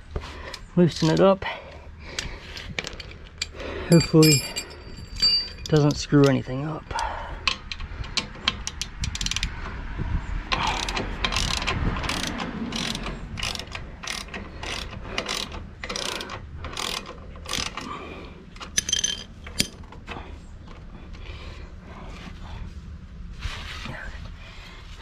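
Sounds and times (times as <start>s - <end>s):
ratchet wrench clicking: 7.5s - 9.5s, 10.5s - 17.9s, 18.7s - 19.8s.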